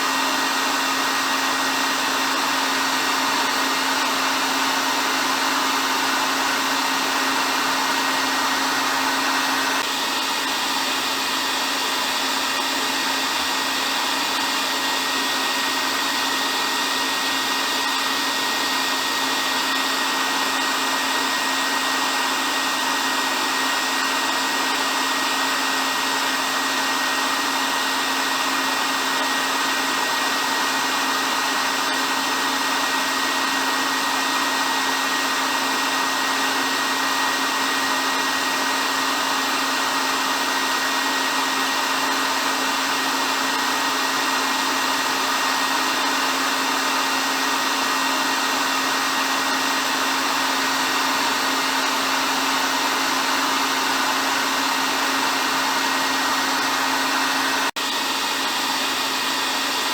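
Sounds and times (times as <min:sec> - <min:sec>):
hair dryer running: 0:00.0 - 0:59.9.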